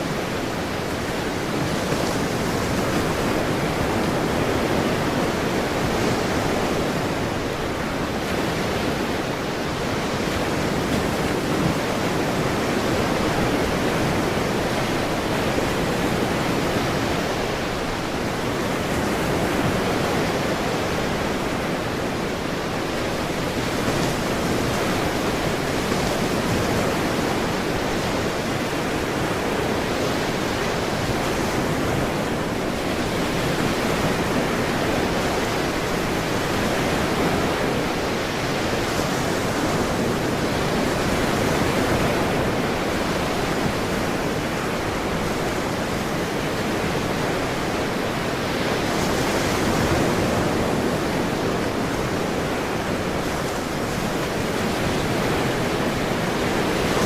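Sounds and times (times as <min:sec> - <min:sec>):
ocean waves washing: 0:00.0 - 0:57.0.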